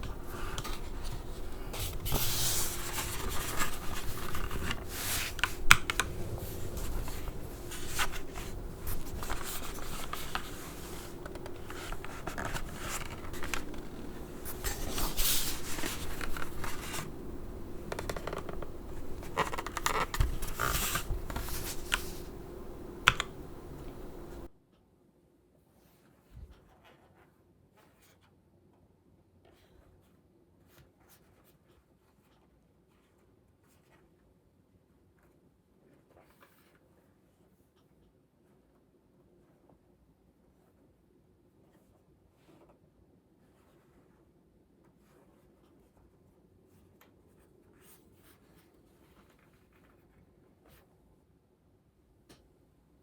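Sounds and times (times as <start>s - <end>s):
faint steady hum: 0.0s - 24.5s
mechanical keyboard being handled: 0.0s - 24.5s.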